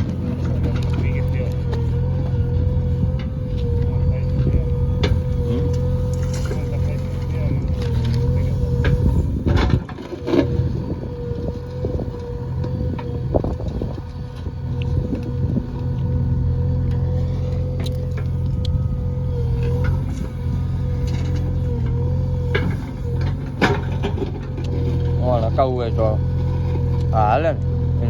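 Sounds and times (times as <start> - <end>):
metal clanks and knocks: 0.0 - 10.7, 20.9 - 25.6
diesel engine whining: 0.0 - 28.0.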